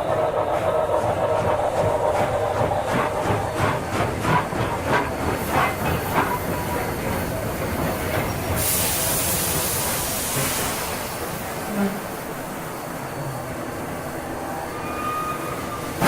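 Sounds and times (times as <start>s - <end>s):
steam locomotive chuffing: 0.0s - 16.0s
loud hiss of steam: 5.3s - 16.0s.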